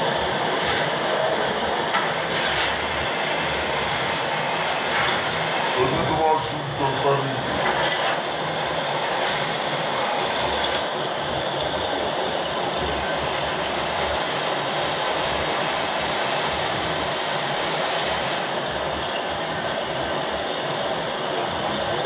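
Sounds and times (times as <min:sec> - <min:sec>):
lathe cutting tool scraping hiss: 0:01.9 - 0:06.0, 0:07.8 - 0:10.9, 0:12.3 - 0:18.5
high-pitched squeal from cut: 0:02.2 - 0:06.3, 0:07.8 - 0:10.8, 0:12.4 - 0:18.5.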